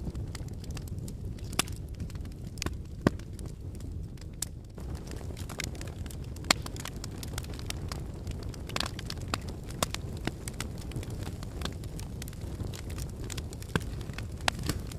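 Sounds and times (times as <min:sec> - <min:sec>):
wood fire crackling and popping: 0:00.0 - 0:14.9.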